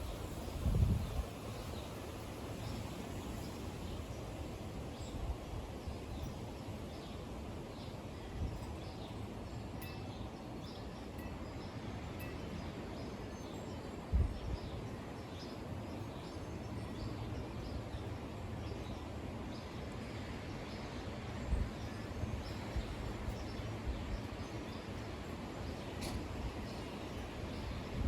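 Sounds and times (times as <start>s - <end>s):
wind buffeting microphone: 0.0s - 2.0s.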